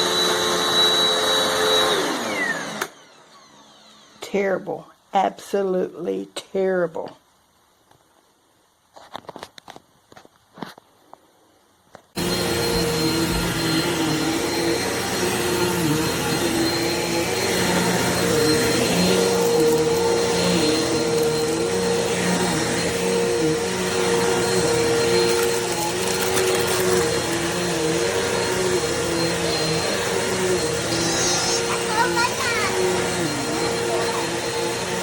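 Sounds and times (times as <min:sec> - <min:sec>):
vacuum cleaner running: 0:00.0 - 0:04.8, 0:12.2 - 0:35.0.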